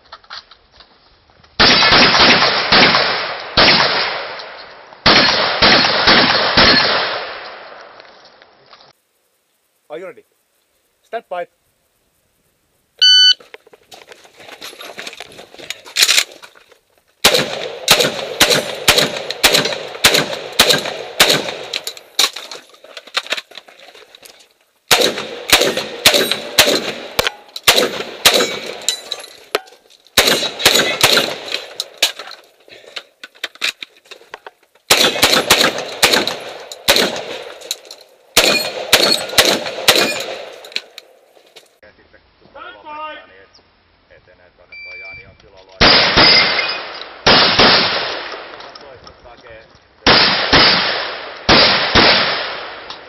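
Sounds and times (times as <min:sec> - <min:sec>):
shotgun firing: 0:01.6 - 0:07.8, 0:17.2 - 0:21.8, 0:24.9 - 0:28.9, 0:30.2 - 0:32.1, 0:34.9 - 0:37.6, 0:38.4 - 0:40.7, 0:45.8 - 0:48.5, 0:50.0 - 0:52.9
shot timer beep: 0:13.0 - 0:13.4, 0:44.8 - 0:45.3.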